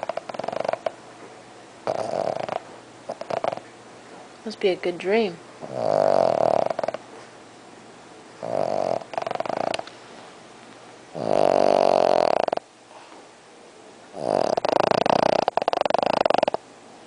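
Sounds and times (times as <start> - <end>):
dog snoring: 0.0 - 1.0, 1.8 - 3.7, 5.6 - 7.0, 8.4 - 9.9, 11.1 - 12.6, 14.1 - 16.6.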